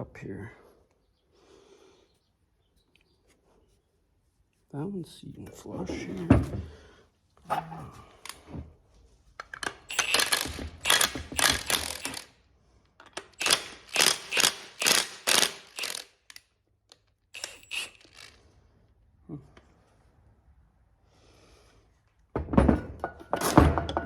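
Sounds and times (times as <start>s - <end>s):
metal parts clinking and scraping: 9.4s - 12.3s, 13.0s - 18.4s.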